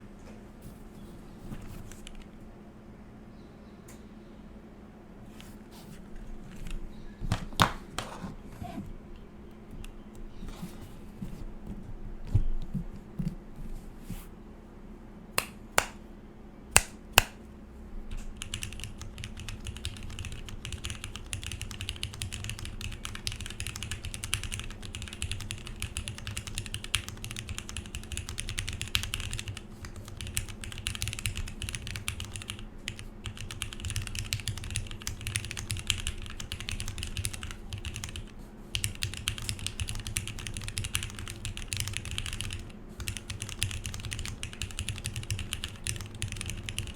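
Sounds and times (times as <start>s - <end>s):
mechanical keyboard typing: 18.3s - 46.9s.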